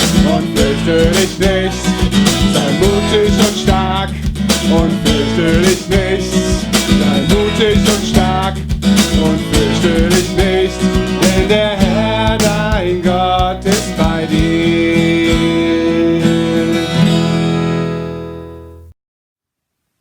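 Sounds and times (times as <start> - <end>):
children's song singing: 0.0 - 16.6
strummed acoustic guitar: 0.0 - 18.9.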